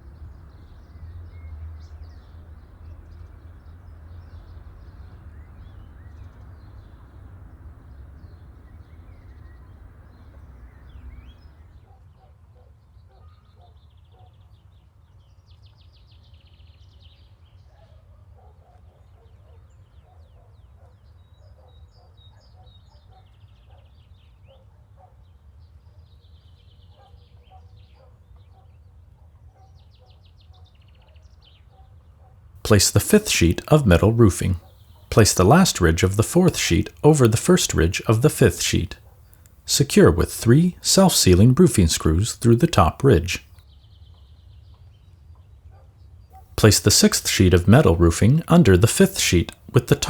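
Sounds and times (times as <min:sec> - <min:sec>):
small birds chirping: 0:00.0 - 0:11.7.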